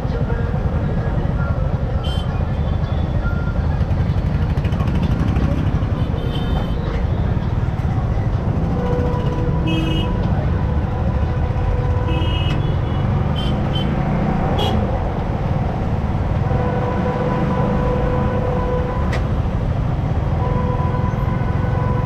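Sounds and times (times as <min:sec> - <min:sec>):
motorcycle engine rumble: 0:00.1 - 0:22.0
vehicle horn beeps: 0:02.0 - 0:02.4, 0:06.0 - 0:07.0, 0:08.6 - 0:10.3, 0:11.8 - 0:14.9.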